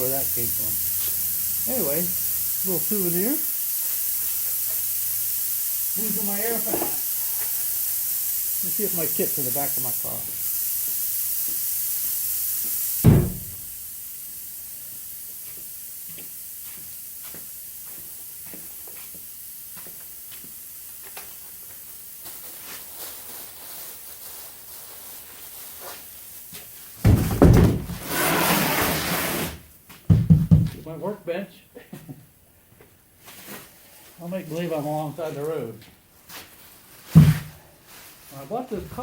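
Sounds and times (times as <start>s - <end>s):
steady hiss: 0.0s - 39.0s
loud thump: 13.0s - 13.6s, 27.0s - 28.0s, 30.1s - 30.8s, 37.2s - 37.5s.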